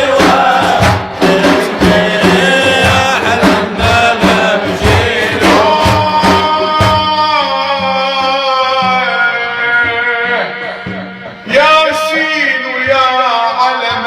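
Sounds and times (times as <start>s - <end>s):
frame drum beats: 0.0s - 12.2s
person chanting: 0.0s - 14.0s.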